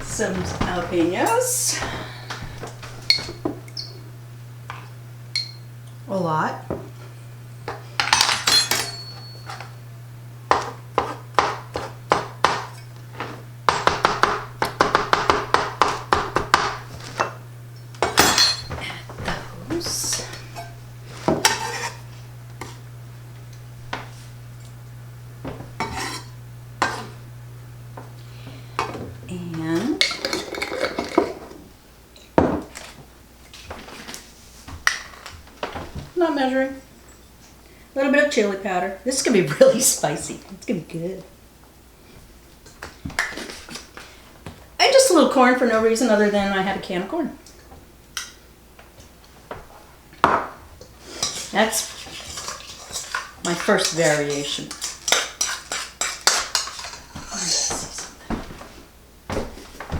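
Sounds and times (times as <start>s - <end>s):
utensils and dishes clinking: 0.0s - 3.9s, 8.0s - 9.8s, 18.0s - 22.0s, 29.7s - 31.6s
knife chopping on cutting board: 10.5s - 12.8s, 13.7s - 16.9s.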